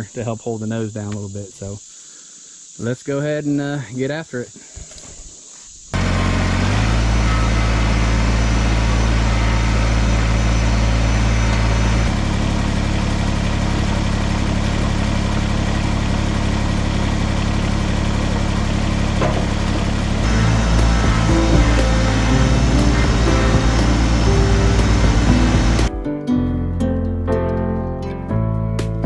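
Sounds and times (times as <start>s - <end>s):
tractor diesel engine running: 6.0s - 26.0s.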